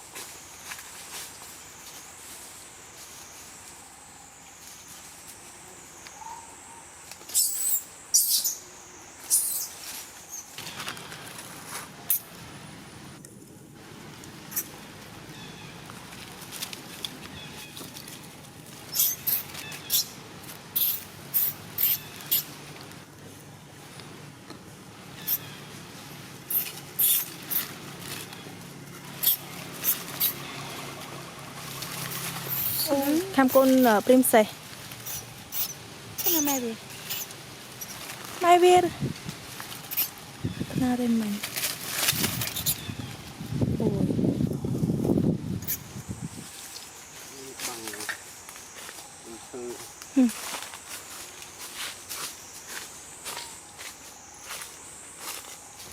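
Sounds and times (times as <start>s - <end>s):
shrill animal calls: 6.1s - 10.8s, 18.9s - 20.2s, 20.8s - 22.5s, 25.2s - 25.7s, 26.5s - 27.7s, 32.5s - 33.8s, 35.0s - 38.0s, 39.9s - 40.2s
monkey squeaking: 7.3s - 8.6s, 9.2s - 10.5s, 14.5s - 14.7s, 18.9s - 20.2s, 20.8s - 22.5s, 25.2s - 25.6s, 26.5s - 27.7s, 29.2s - 30.6s, 32.4s - 34.3s, 35.0s - 38.0s, 39.8s - 40.2s, 42.2s - 43.0s, 45.6s - 45.9s.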